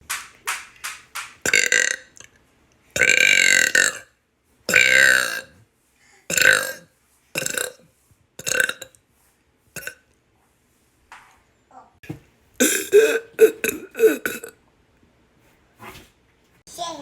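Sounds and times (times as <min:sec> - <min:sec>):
person burping: 0:01.5 - 0:02.3, 0:03.0 - 0:04.1, 0:04.7 - 0:05.6, 0:06.3 - 0:07.8, 0:08.4 - 0:09.0, 0:09.8 - 0:10.0, 0:12.6 - 0:14.6.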